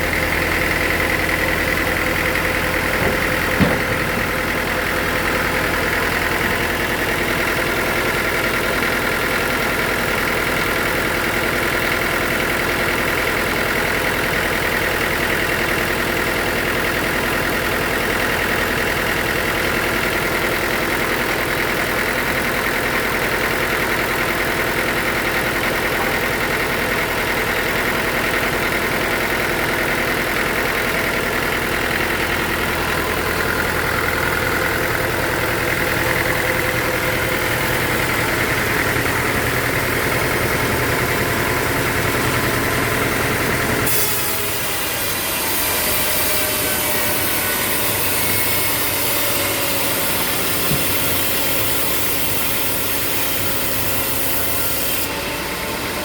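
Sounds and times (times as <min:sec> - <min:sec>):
sawmill machinery droning: 0:00.0 - 0:56.0
sharp knock: 0:02.9 - 0:04.9.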